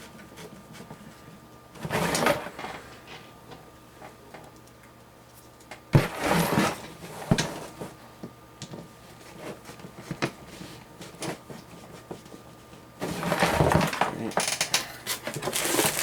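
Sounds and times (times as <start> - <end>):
plastic and metal parts clattering: 13.0 - 16.0.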